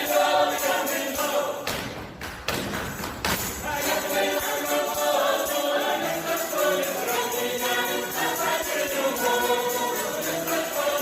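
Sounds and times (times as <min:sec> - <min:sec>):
jingling percussion: 0:00.0 - 0:01.7, 0:02.8 - 0:11.0
folk choir singing: 0:00.0 - 0:02.0, 0:03.4 - 0:11.0.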